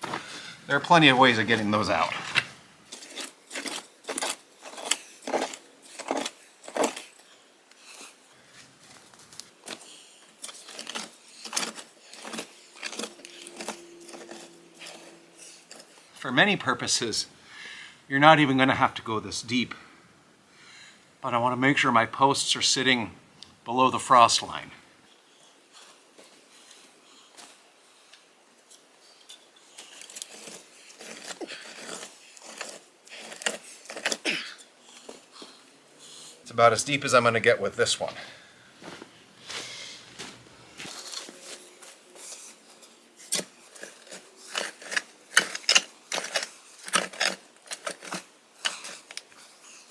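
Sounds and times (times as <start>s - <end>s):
digging tool scraping gravel: 0.0s - 8.2s, 9.6s - 17.2s, 29.7s - 34.4s, 38.8s - 49.9s.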